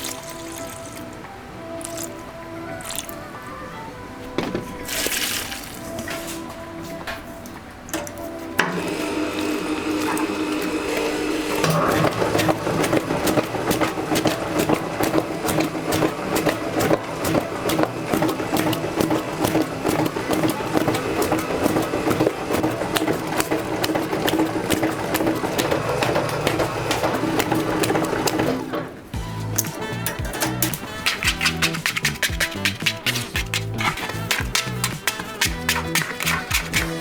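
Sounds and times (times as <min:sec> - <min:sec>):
machine motor humming: 0:08.6 - 0:31.5.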